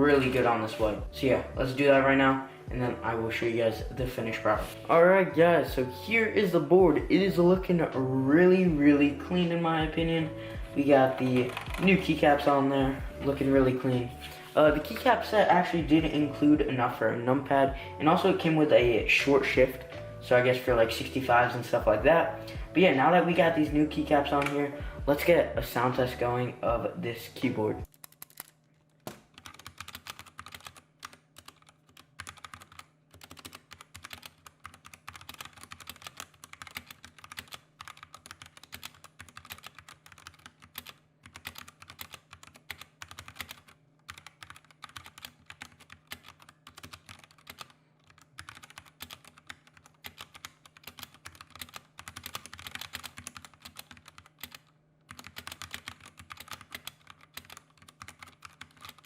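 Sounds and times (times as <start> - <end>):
keyboard stabilizers rattling: 10.8 - 13.8, 29.3 - 59.0
mechanical keyboard key clacks: 29.3 - 59.0.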